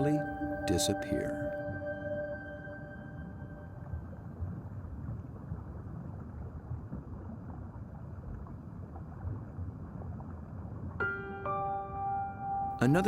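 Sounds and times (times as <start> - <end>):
rumbling water noise: 1.6 - 11.6.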